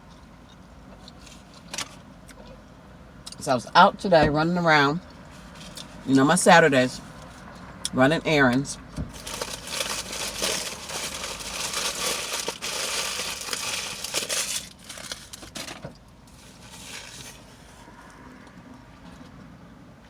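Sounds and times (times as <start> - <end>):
paper wrapper crinkling: 9.1 - 17.8.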